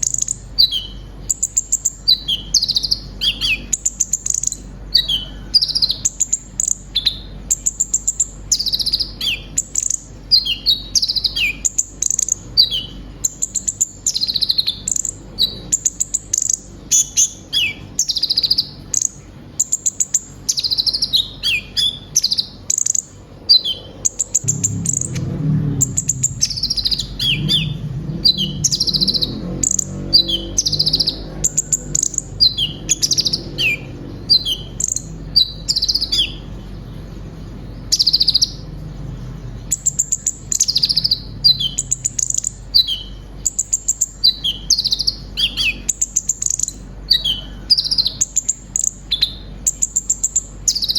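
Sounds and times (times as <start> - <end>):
sunbird singing high chirps: 0.0 - 38.9, 39.6 - 50.9
low rumble: 23.4 - 42.8.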